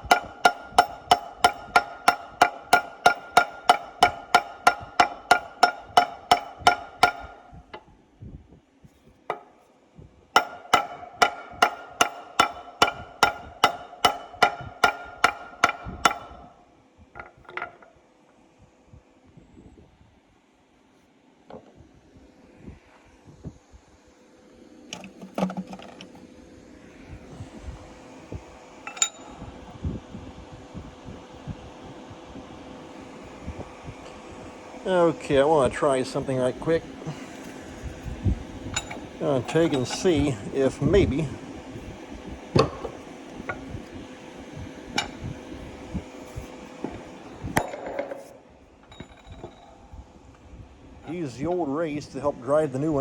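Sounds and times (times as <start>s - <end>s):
metal hammer strikes on steel: 0.0s - 7.5s, 10.4s - 16.5s, 28.9s - 29.5s, 38.8s - 40.3s
steady hum and hiss: 0.0s - 53.0s
metal clinks and knocks: 24.9s - 26.2s, 28.8s - 29.6s, 38.7s - 40.3s, 47.6s - 50.0s
light metal clinks: 28.9s - 29.5s, 38.7s - 40.2s.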